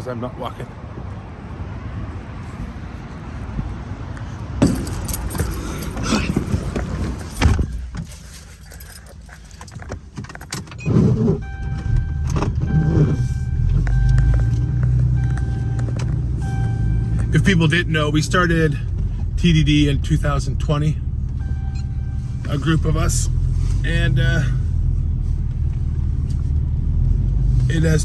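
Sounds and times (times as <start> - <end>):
truck engine starting and idling: 4.3 - 28.0
clicks and knocks of vehicle door: 4.6 - 8.2
keys jangling: 4.6 - 10.7
warning chime: 11.4 - 18.0, 21.4 - 23.3.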